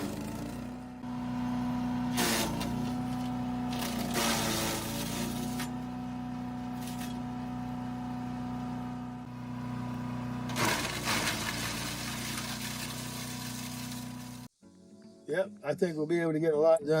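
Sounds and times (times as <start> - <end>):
small gasoline engine running: 0.0 - 14.5
branch crackling through chipper: 10.4 - 14.5.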